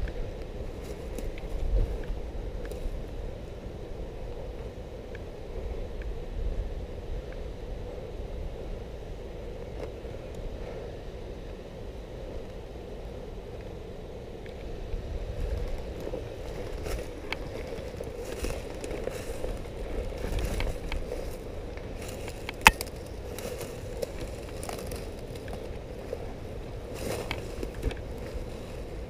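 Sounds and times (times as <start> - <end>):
footsteps through dry leaves: 15.4 - 29.0.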